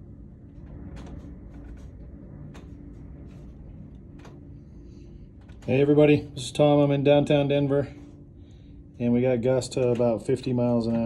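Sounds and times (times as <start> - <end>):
faint ticks and rattles: 0.4 - 5.9.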